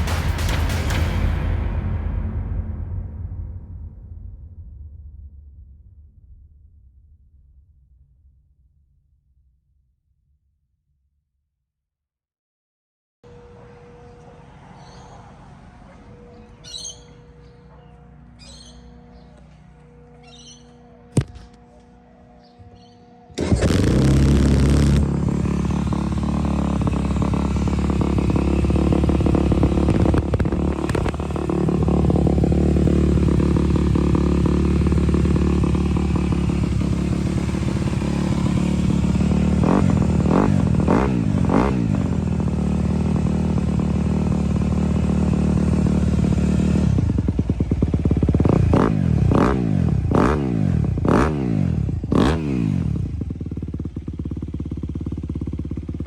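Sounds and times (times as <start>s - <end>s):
motorcycle engine idling: 0.0s - 1.4s, 13.3s - 56.0s
engine throttle blips: 13.3s - 56.0s.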